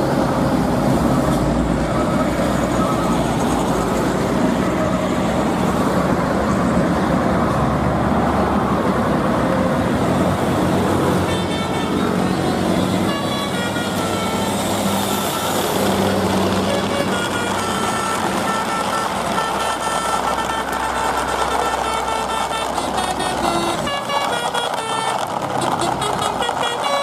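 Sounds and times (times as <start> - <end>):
vehicle engine running: 8.6 - 27.0
short high horn toots: 11.2 - 15.8.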